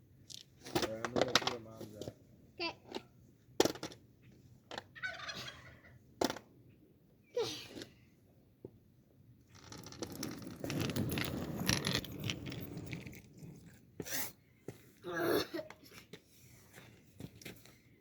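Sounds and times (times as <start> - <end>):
skateboard wheels rumbling: 9.5 - 14.0.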